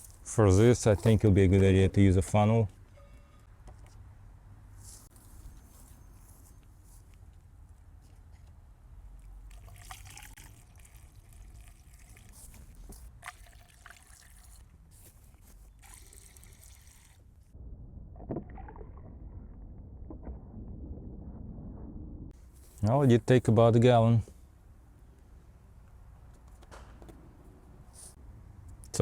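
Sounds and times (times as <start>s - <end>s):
fluid pouring through funnel: 9.5s - 14.7s, 15.8s - 17.2s.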